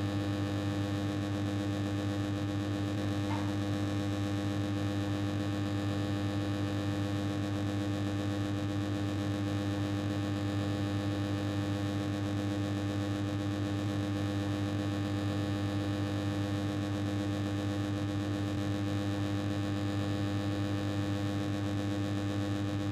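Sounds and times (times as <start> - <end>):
air conditioner humming and buzzing: 0.0 - 7.8.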